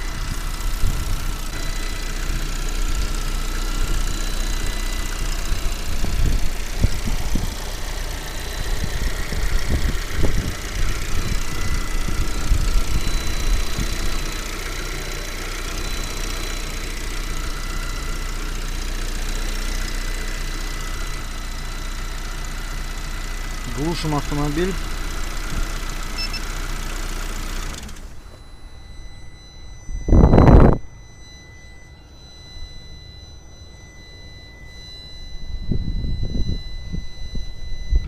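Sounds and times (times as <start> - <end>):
car engine idling: 0.0 - 38.0
high-pitched whistle: 26.1 - 26.5, 27.6 - 38.0.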